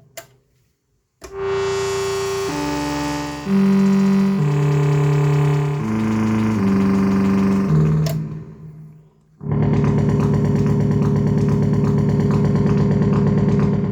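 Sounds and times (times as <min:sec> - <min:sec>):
fast pulsing synth tone: 0:01.3 - 0:08.7
synthesizer held notes: 0:01.3 - 0:12.4.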